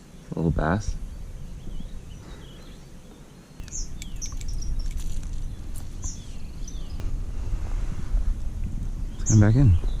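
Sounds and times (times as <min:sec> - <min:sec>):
birds chirping: 0:00.0 - 0:07.3, 0:08.9 - 0:10.0
sharp clicks: 0:03.6 - 0:05.4.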